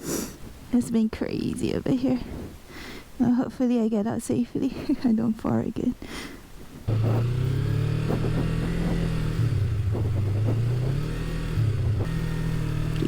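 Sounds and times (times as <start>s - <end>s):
motorcycle engine revving: 6.9s - 13.0s.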